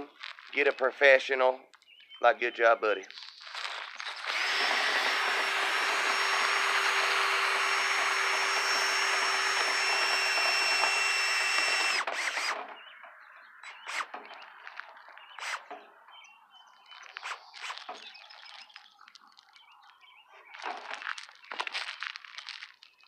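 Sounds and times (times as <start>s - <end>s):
power drill running: 4.1s - 12.7s, 13.6s - 14.2s, 15.4s - 15.8s, 17.2s - 17.9s.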